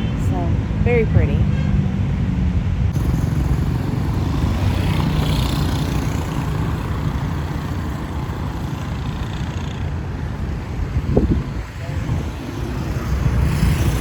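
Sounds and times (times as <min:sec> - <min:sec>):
traffic rumble: 0:00.0 - 0:14.0
vehicle passing close: 0:02.9 - 0:14.0.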